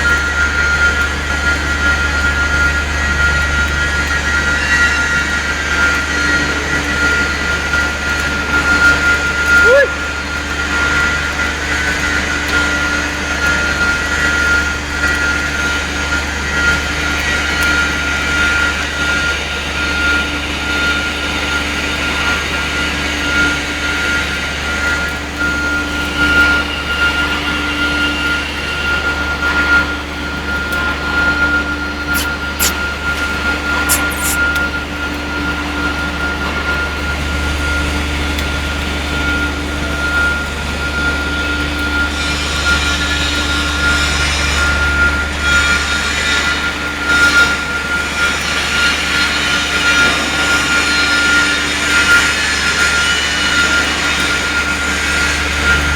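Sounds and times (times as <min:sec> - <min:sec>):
electric welding hiss: 0:32.1 - 0:32.8, 0:33.9 - 0:34.4.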